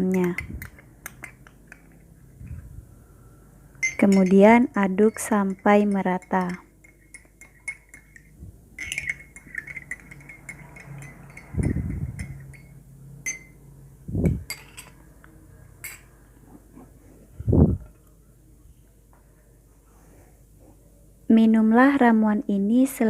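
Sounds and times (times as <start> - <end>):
spoon clinking in glass: 3.8 - 13.6, 14.2 - 15.0.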